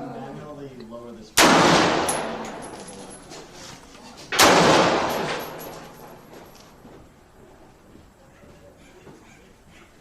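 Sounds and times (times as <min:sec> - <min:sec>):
gunshots with echoing tail: 0:01.4 - 0:02.8, 0:04.4 - 0:06.2.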